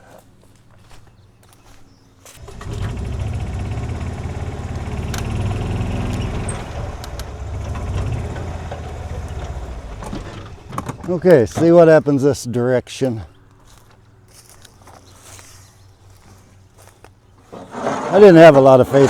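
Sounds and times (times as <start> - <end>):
golf cart engine running: 2.4 - 11.8.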